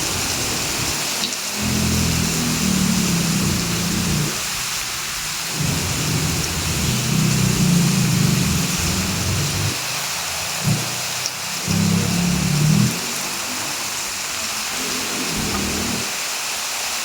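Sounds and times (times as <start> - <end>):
heavy rain falling: 0.0 - 17.0
low rumble: 5.5 - 9.8, 10.6 - 10.9.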